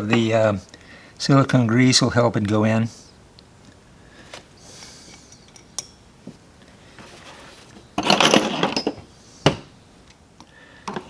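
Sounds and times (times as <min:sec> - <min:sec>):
metal tools clinking: 0:05.3 - 0:06.0, 0:08.0 - 0:09.1.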